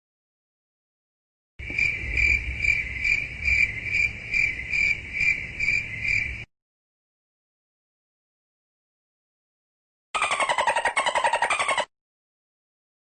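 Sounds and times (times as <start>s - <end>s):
cricket chirping: 1.6s - 6.5s.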